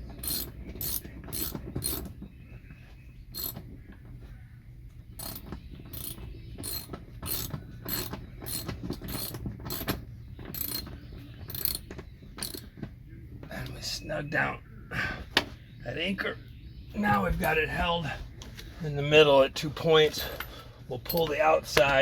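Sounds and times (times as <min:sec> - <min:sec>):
ratchet wrench clicking: 0:00.2 - 0:02.1, 0:03.4 - 0:03.6, 0:05.2 - 0:10.9, 0:11.5 - 0:11.8, 0:12.4 - 0:12.7.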